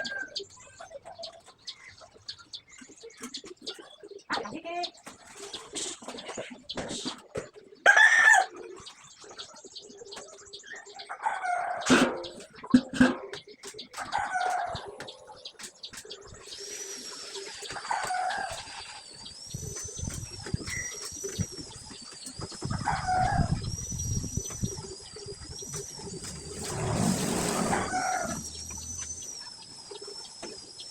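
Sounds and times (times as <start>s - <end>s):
chickens calling: 0.0s - 30.4s
high wavering whine: 16.1s - 30.9s.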